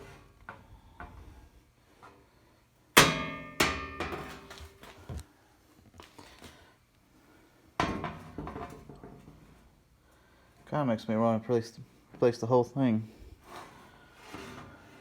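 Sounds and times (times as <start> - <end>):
sheet metal panels clanging: 3.0 - 4.7.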